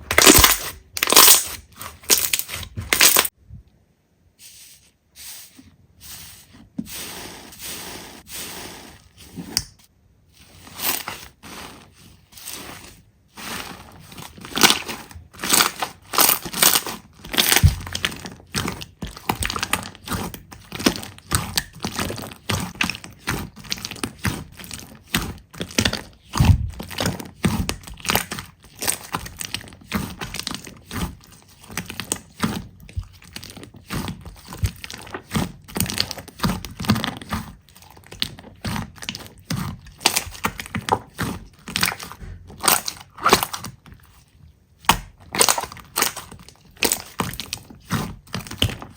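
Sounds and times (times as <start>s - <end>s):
slime crackling and popping: 0.0s - 3.3s, 14.2s - 43.8s, 44.8s - 48.9s.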